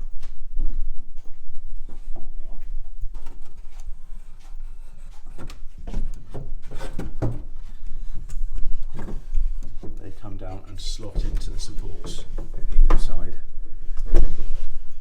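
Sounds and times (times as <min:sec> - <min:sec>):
wood rubbing scrapes: 0:03.2 - 0:12.6
wooden knocks: 0:05.0 - 0:10.0.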